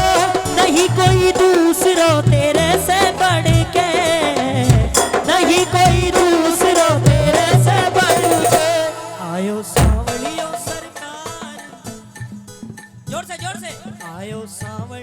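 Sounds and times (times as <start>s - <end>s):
folk drum beat: 0.0s - 15.0s.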